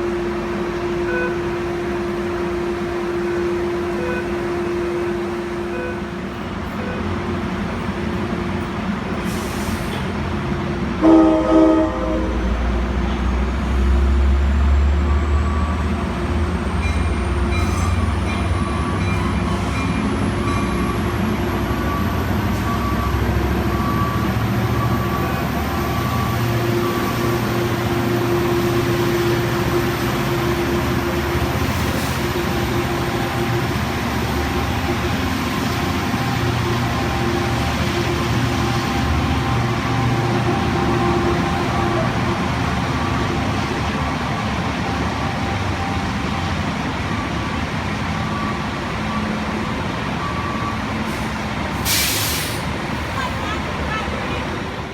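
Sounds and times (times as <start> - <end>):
train horn: 0.0 - 6.2, 11.0 - 12.7, 25.9 - 31.4
diesel train rumbling: 0.0 - 54.9.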